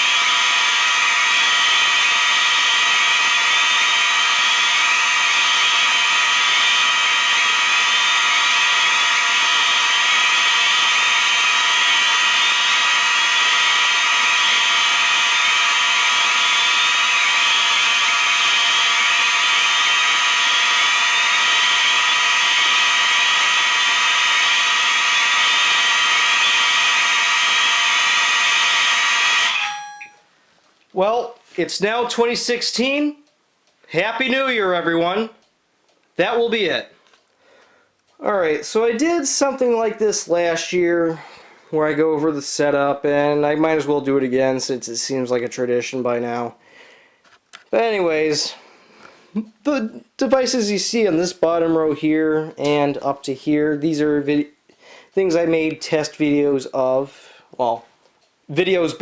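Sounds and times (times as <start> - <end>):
fire alarm horns sounding: 5.2 - 30.3.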